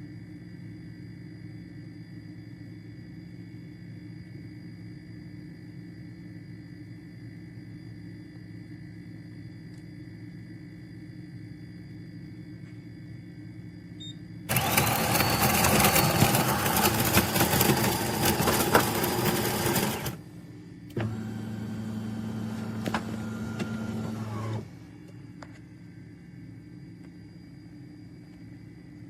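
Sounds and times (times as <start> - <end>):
espresso machine whirring: 14.5 - 20.3, 20.9 - 24.9
espresso machine humming: 14.5 - 25.0.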